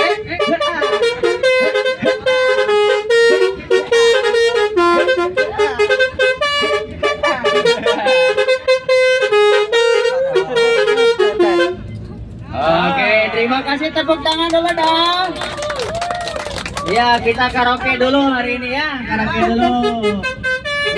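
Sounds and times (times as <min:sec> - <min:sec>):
multi-tone bus horn playing a tune: 0:00.0 - 0:12.8, 0:17.4 - 0:20.9.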